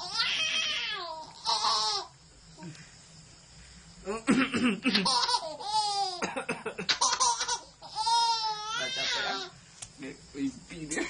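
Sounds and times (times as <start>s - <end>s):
baby squealing: 0.0s - 2.1s, 7.0s - 9.5s
baby giggling: 4.9s - 6.2s, 6.8s - 8.5s.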